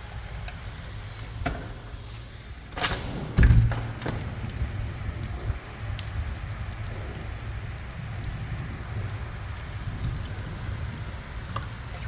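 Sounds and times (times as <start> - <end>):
heavy rain falling: 0.0 - 12.0
sharp thump: 3.0 - 4.1.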